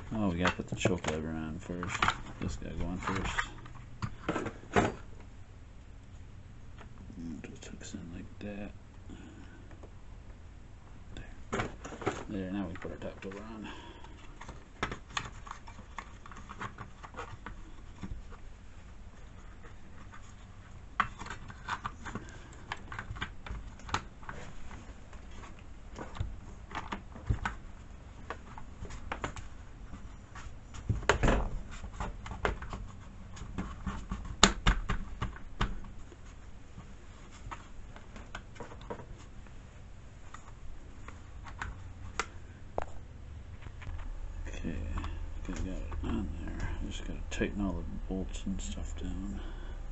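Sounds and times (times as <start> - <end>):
plastic parts clicking and knocking: 0.0 - 5.1, 11.5 - 18.4, 19.4 - 30.1, 30.7 - 36.0.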